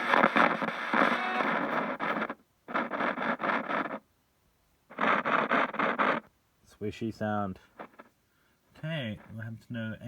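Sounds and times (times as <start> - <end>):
radio static swishes: 0.0 - 4.1, 4.9 - 6.3, 7.2 - 8.2.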